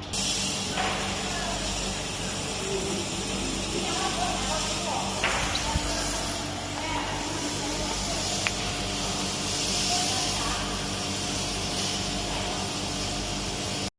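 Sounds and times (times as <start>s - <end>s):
machine hum with hiss: 0.0s - 13.9s.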